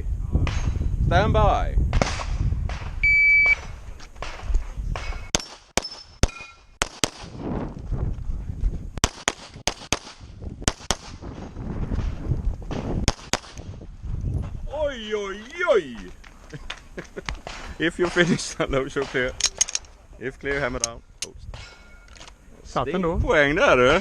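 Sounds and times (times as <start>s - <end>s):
shot timer beep: 3.0s - 3.6s.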